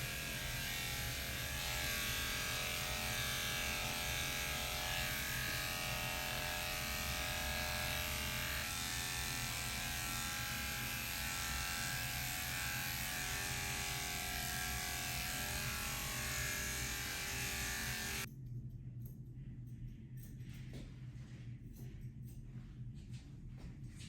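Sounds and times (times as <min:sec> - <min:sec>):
electric clippers buzzing: 0:00.0 - 0:18.3.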